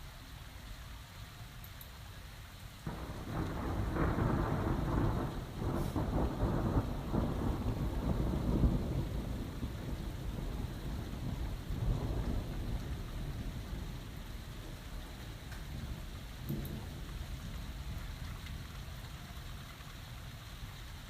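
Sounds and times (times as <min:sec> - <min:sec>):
rain hissing: 0:00.0 - 0:21.0
thunder rumbling: 0:02.9 - 0:19.1.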